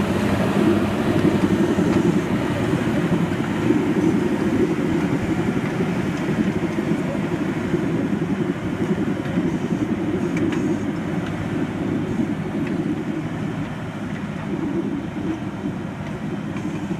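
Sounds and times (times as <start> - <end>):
tractor diesel engine rumbling: 0.0 - 16.9.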